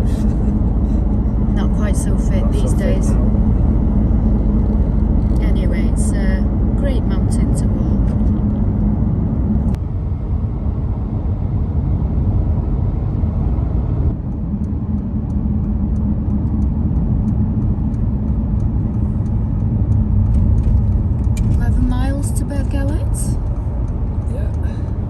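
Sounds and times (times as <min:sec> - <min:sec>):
car engine and road rumble: 0:00.0 - 0:25.0
faint regular ticking: 0:14.3 - 0:25.0.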